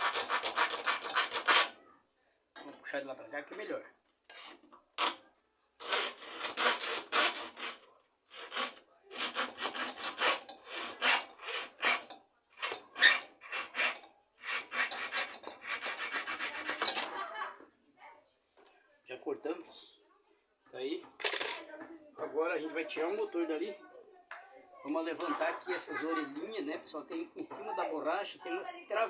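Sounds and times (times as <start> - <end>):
hacksaw blade sawing metal pipe: 0.0 - 1.8, 5.8 - 17.1.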